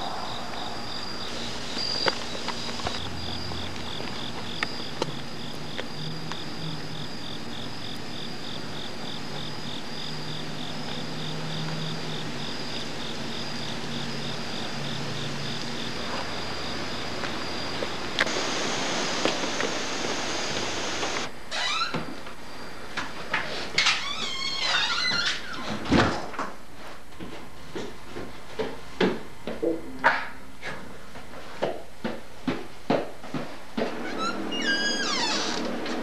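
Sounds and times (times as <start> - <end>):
steady hiss: 0.0 - 21.6
crickets chirping: 0.0 - 25.3.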